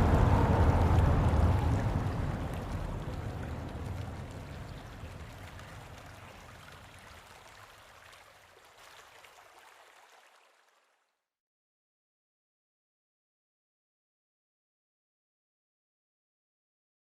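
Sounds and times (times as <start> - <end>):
running water dripping and trickling: 0.0 - 11.0.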